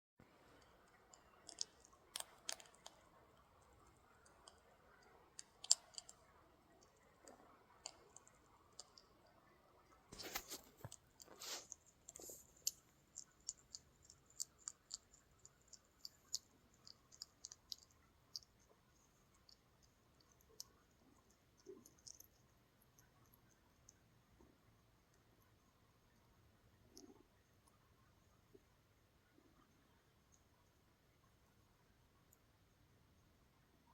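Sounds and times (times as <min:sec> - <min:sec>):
hedgehog crunching biscuits: 0:00.7 - 0:23.3.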